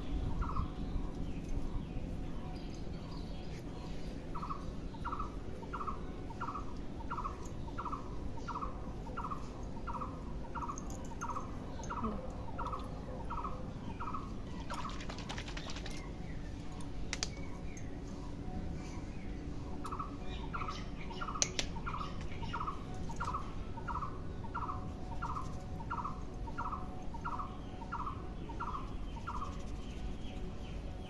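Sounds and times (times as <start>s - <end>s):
crackling clicks: 16.7s - 17.5s, 21.4s - 22.4s.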